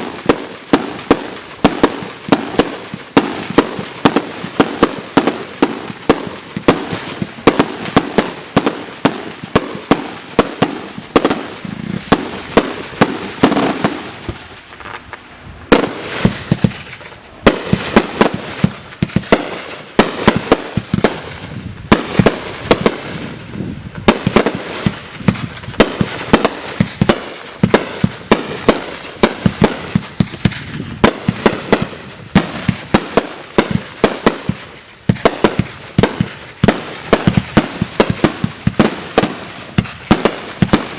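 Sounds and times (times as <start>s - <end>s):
fireworks bangs and crackles: 0.0s - 40.9s.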